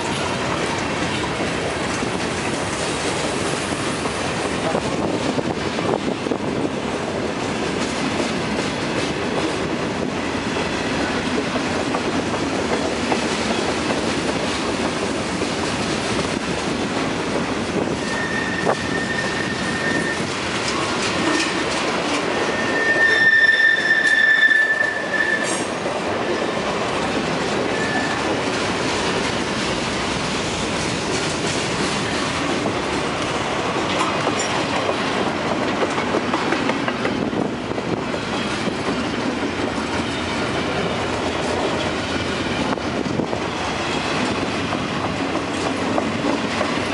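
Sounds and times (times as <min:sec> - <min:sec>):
train wheels clattering on rails: 0:00.0 - 0:46.9
high wheel squeal: 0:18.0 - 0:20.3, 0:22.3 - 0:26.6, 0:27.6 - 0:28.3.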